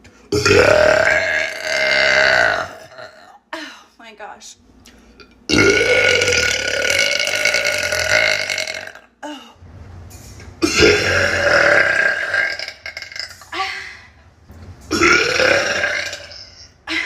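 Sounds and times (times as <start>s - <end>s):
woman burping: 0.3s - 3.5s, 5.5s - 9.6s, 10.6s - 13.9s, 14.9s - 17.0s.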